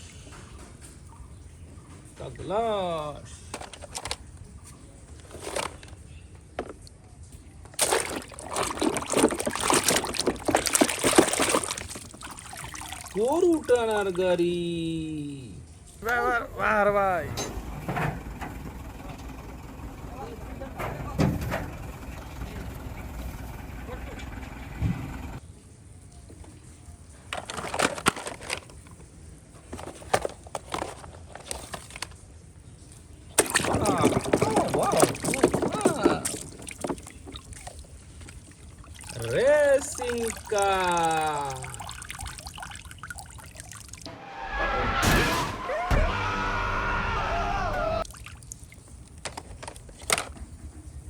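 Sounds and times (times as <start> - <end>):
water sloshing and splashing: 0.0 - 14.3, 17.3 - 44.2, 48.0 - 51.0
plastic toys clicking and scraping: 3.3 - 6.9, 27.2 - 32.3, 33.4 - 38.4, 49.0 - 50.8.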